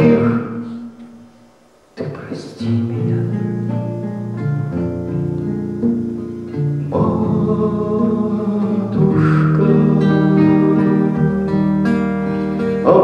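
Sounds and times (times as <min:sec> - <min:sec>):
man singing: 0:00.0 - 0:00.9, 0:02.0 - 0:03.4, 0:06.8 - 0:13.0
acoustic guitar: 0:00.0 - 0:13.0.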